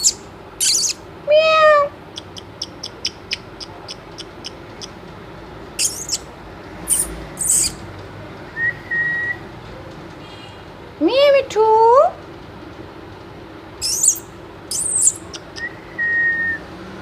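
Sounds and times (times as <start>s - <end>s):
parrot screeching: 0.0s - 1.0s, 5.8s - 6.2s, 6.9s - 7.8s, 13.8s - 15.4s
parrot whistling: 0.0s - 1.0s, 2.2s - 4.9s, 5.8s - 6.2s, 6.9s - 7.8s, 13.8s - 16.6s
parrot clicking: 2.1s - 5.0s.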